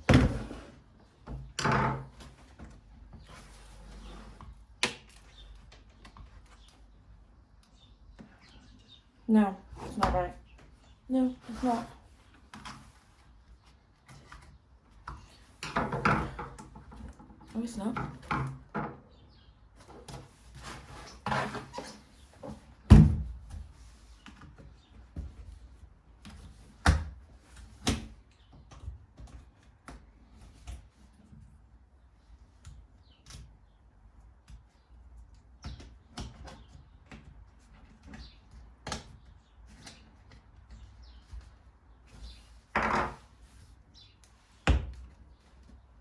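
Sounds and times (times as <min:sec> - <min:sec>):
whiteboard knocks and thuds: 0:00.0 - 0:00.7, 0:22.9 - 0:23.6.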